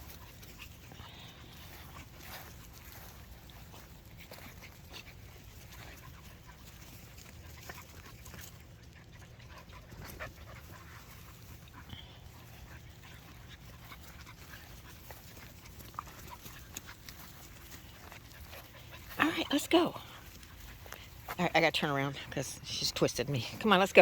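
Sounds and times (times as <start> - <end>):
puppies panting: 0.0 - 24.0.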